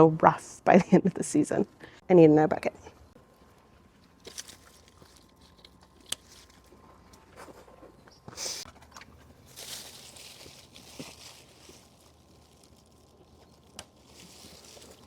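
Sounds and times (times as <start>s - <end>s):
rustling of handling: 3.3s - 15.0s.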